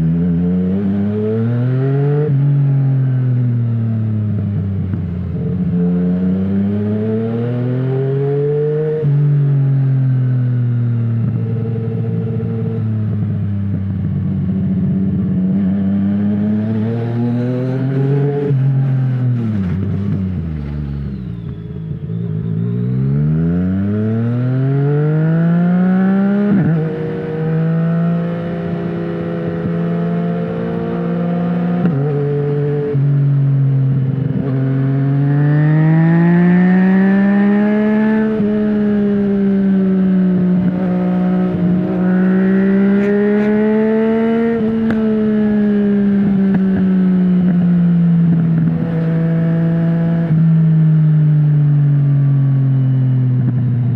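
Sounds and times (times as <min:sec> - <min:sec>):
motorcycle engine revving: 0:00.0 - 0:53.9
gear change: 0:42.8 - 0:45.3.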